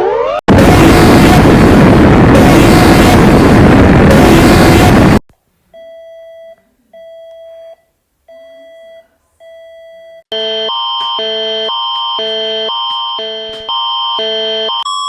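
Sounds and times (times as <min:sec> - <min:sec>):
loud noisy alert blast: 0:00.0 - 0:05.2.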